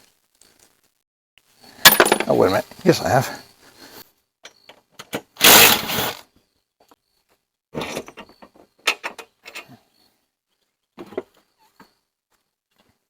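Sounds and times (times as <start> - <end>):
tools and metal parts clatter: 1.9 - 2.6, 7.8 - 9.7
clicks and clanks: 7.8 - 9.7.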